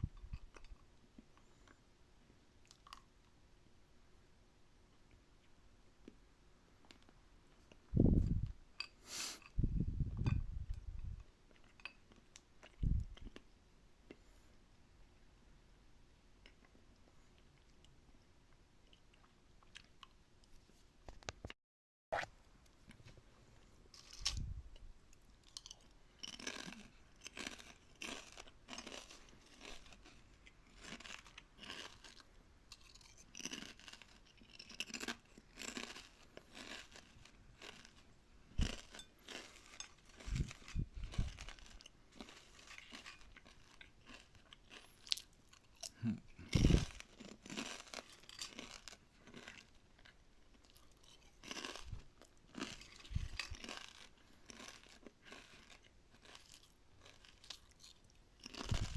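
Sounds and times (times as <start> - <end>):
crunchy food chewing: 23.9 - 58.9.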